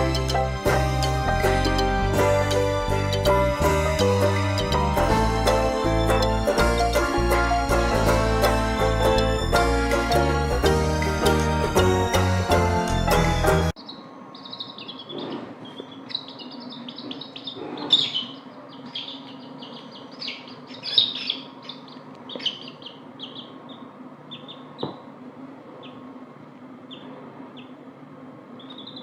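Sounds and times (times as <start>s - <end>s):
background music: 0.0s - 13.8s
chicks peeping: 10.6s - 25.1s, 25.8s - 26.1s, 26.9s - 27.8s, 28.6s - 29.0s.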